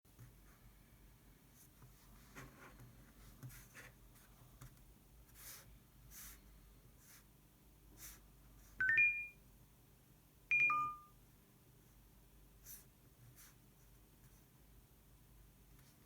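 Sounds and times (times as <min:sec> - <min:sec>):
falling two-note chime: 0:10.5 - 0:11.1.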